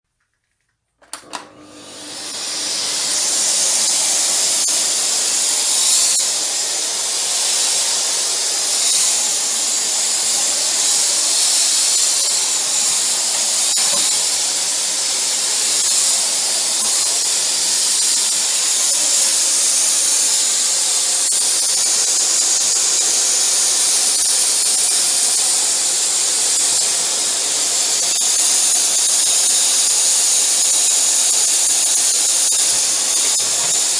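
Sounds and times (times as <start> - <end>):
vacuum switch clicks: 1.0 - 1.7
vacuum cleaner motor running: 1.2 - 33.9.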